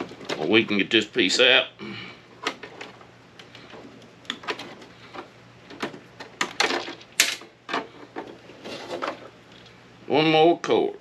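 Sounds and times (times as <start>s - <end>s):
hard plastic parts clicking and clattering: 0.0s - 0.7s, 2.4s - 9.7s.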